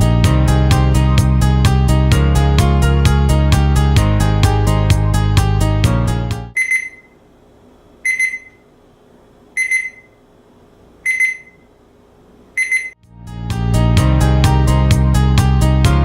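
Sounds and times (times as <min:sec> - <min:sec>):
music: 0:00.0 - 0:06.6, 0:13.0 - 0:16.0
high electronic alarm beeps: 0:06.6 - 0:07.2, 0:08.1 - 0:08.6, 0:09.6 - 0:10.2, 0:11.1 - 0:11.6, 0:12.6 - 0:13.0.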